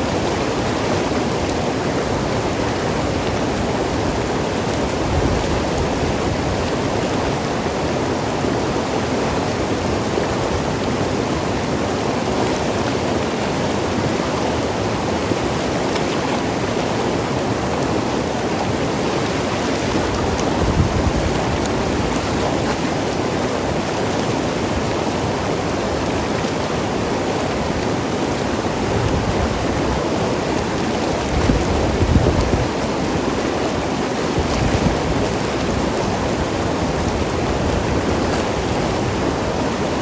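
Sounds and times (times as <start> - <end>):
river flowing over rocks: 0.0 - 40.0.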